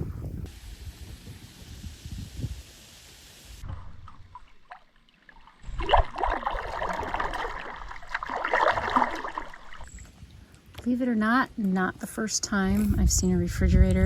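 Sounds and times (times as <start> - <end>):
wind rumble on microphone: 0.0 - 2.8, 12.4 - 14.0
water splashing around kayak: 3.6 - 10.3.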